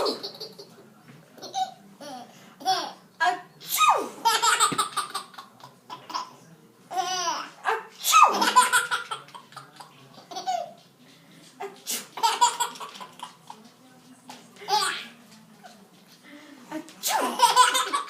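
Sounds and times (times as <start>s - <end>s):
adult pretend sneezes: 3.7s - 4.2s, 17.0s - 17.4s
baby laughing: 6.9s - 10.8s, 12.2s - 13.4s.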